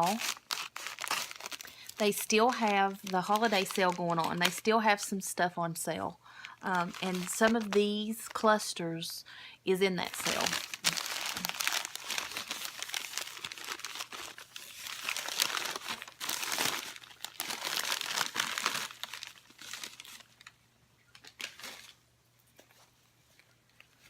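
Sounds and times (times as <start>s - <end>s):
packing material crinkling and tearing: 0.0s - 4.7s, 6.4s - 8.6s, 10.0s - 22.0s.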